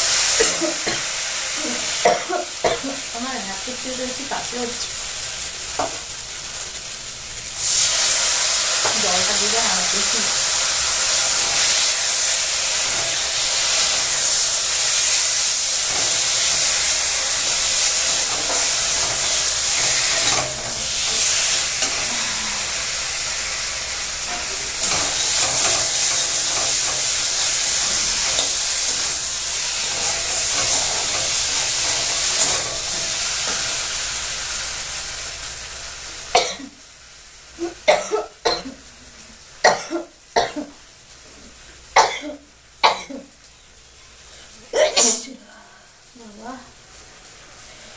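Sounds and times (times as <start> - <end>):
food sizzling in hot oil: 0.0 - 47.9
person coughing: 0.4 - 3.0, 37.6 - 38.8, 44.8 - 45.4.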